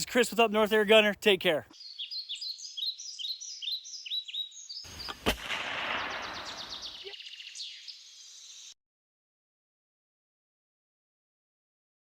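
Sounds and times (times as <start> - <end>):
birds chirping faintly: 0.0 - 8.8
burst of noise: 5.0 - 7.1
loud sharp gunshot: 5.0 - 7.1.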